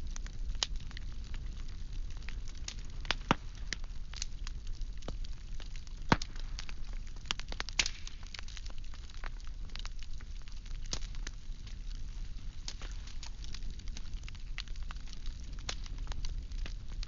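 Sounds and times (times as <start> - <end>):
low steady rumble: 0.0 - 8.8
firewood crackling and popping: 0.0 - 17.0.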